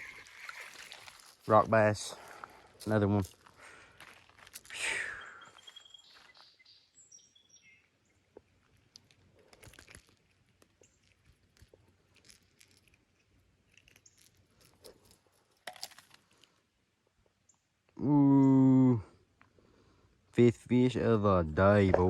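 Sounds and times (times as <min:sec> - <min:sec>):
faint clicks and crunches: 0:00.0 - 0:04.8, 0:08.3 - 0:16.6
faint outdoor ambience: 0:00.0 - 0:22.0
bird chirps: 0:05.0 - 0:08.3.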